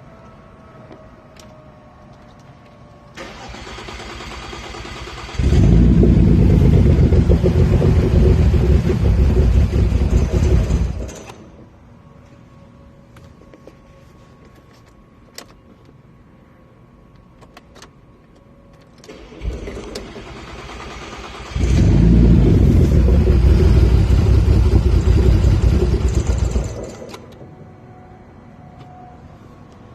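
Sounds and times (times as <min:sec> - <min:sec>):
engine cranking: 0:03.2 - 0:11.6, 0:19.1 - 0:27.6
car engine running: 0:05.2 - 0:11.6, 0:20.4 - 0:27.4.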